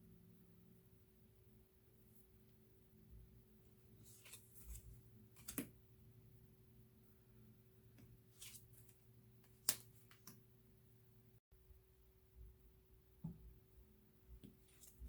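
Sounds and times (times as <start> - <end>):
faint steady hum: 0.0 - 15.0
cards clicking and tapping: 5.4 - 5.8, 9.4 - 10.4.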